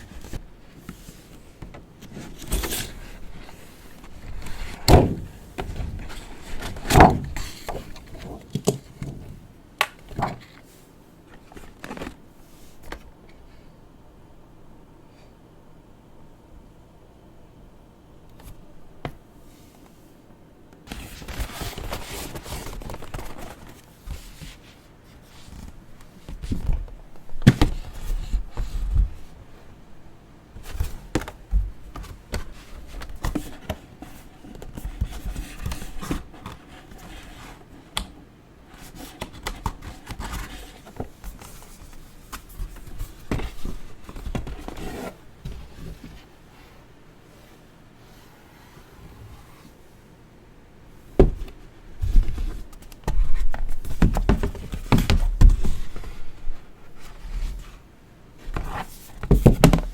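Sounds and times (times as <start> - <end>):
packaging rustling and scraping: 20.9 - 26.7, 38.8 - 46.3.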